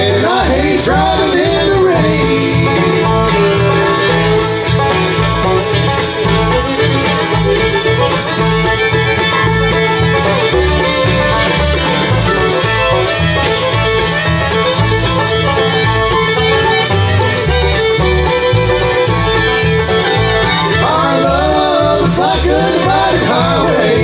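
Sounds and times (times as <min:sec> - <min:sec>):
bluegrass band playing: 0:00.0 - 0:24.0.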